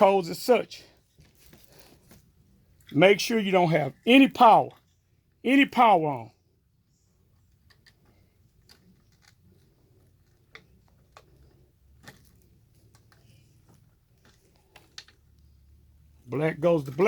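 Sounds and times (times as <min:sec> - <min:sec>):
wires being twisted clicking: 0:07.4 - 0:15.7.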